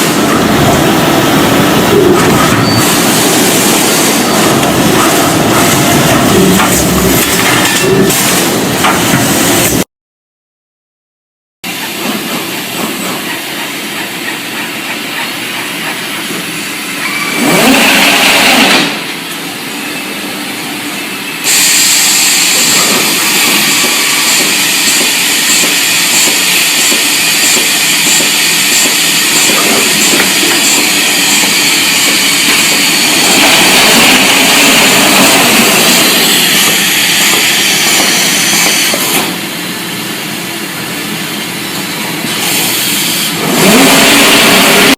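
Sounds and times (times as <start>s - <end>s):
sheet-metal machine running: 17.0s - 44.9s.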